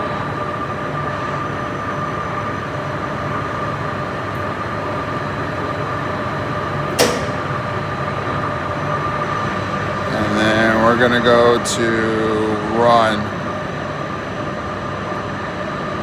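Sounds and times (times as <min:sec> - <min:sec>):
constant whine: 0:00.0 - 0:14.7
machinery hum: 0:00.0 - 0:16.0
sharp clack: 0:06.8 - 0:07.8.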